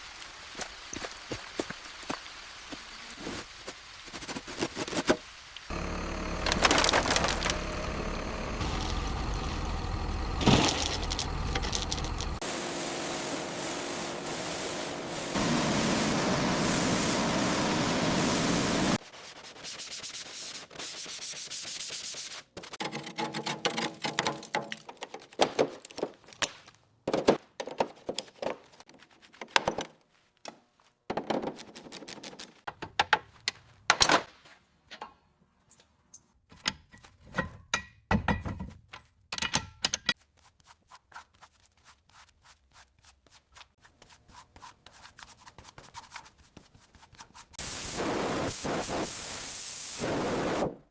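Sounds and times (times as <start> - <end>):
loud steady hiss: 12.4 - 19.0, 47.6 - 50.8
scraping and rubbing: 40.2 - 47.6.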